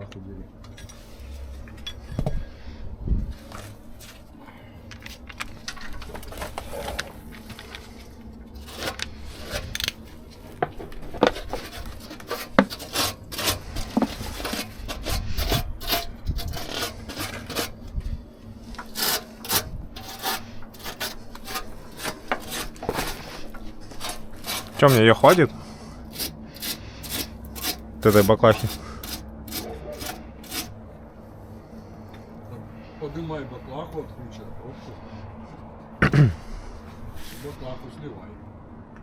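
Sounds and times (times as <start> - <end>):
hand tools scraping metal: 8.5 - 17.9, 18.6 - 30.8.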